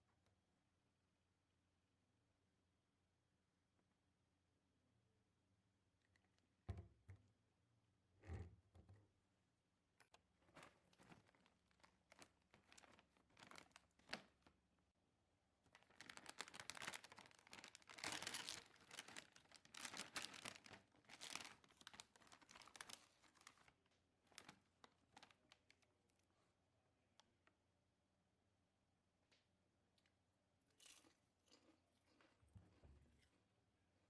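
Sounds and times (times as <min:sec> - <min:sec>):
packaging rustling: 0:10.4 - 0:14.5, 0:15.7 - 0:23.7, 0:24.3 - 0:25.6
wrapping crinkling and tearing: 0:10.4 - 0:14.6, 0:15.7 - 0:25.8.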